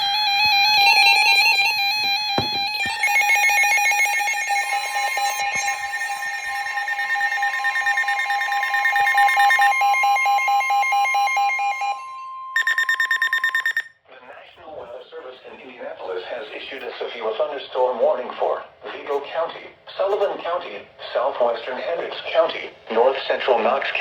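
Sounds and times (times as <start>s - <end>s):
warbling tone: 0.0s - 9.8s
higher alarm tone: 0.0s - 13.9s
pulsing electronic alarm tone: 0.0s - 13.9s
rapid beeping: 0.0s - 13.9s.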